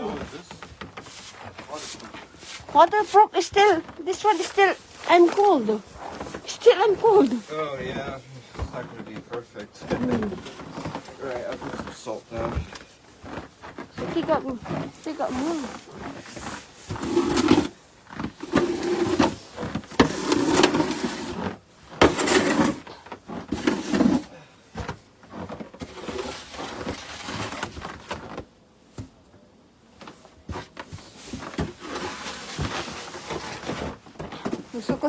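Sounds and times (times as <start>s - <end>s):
scraping and crunching on snow: 13.2s - 24.3s.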